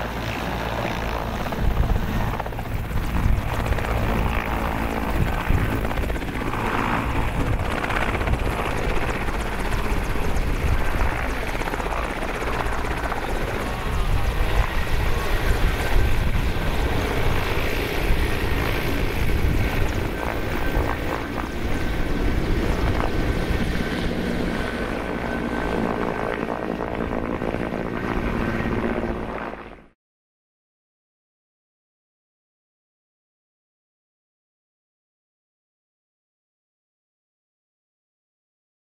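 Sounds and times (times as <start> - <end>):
helicopter rotor and turbine rumble: 0.0 - 30.0.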